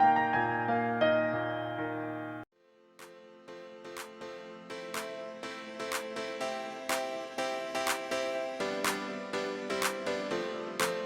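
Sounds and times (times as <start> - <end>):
music with chords and beat: 3.0 - 11.0.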